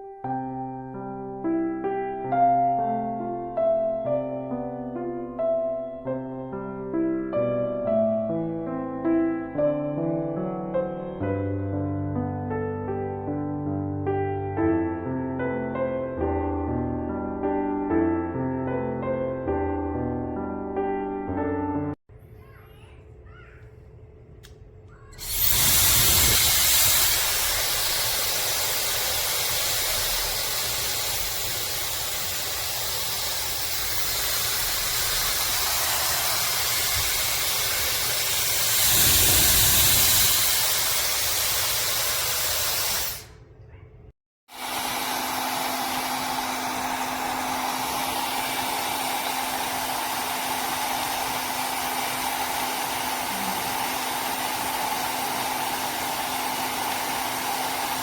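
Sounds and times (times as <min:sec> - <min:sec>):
hair dryer running: 0:25.2 - 0:43.4, 0:44.5 - 0:58.0.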